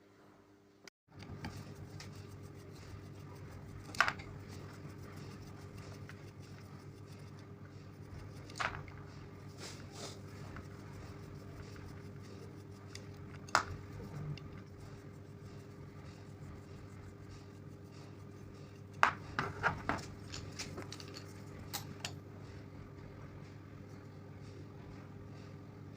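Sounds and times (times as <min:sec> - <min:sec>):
steady low hum: 0:00.0 - 0:25.9
tools clicking and knocking: 0:19.0 - 0:22.2.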